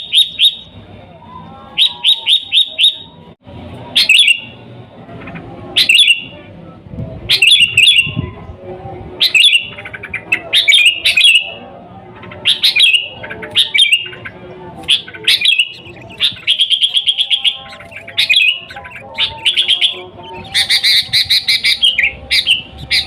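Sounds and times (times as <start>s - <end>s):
faint low background murmur: 0.0s - 23.0s
bulbul chattering calls: 5.2s - 6.3s, 9.2s - 23.0s.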